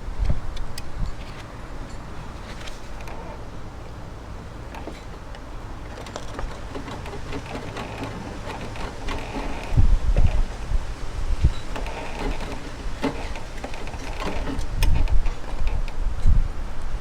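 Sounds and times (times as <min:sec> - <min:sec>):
hand tools clicking and scraping: 0:04.7 - 0:16.0.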